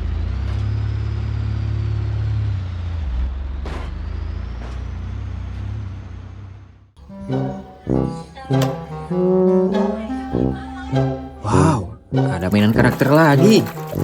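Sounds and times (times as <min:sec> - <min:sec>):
plucked string music: 0:07.0 - 0:14.0
truck engine running: 0:07.0 - 0:14.0.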